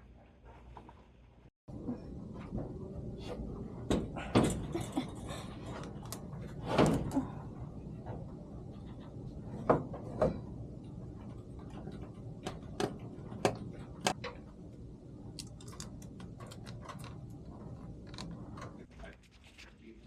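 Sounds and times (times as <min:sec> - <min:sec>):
steady low hum: 0:01.3 - 0:20.0
knocks and clicks of tools: 0:08.0 - 0:14.6.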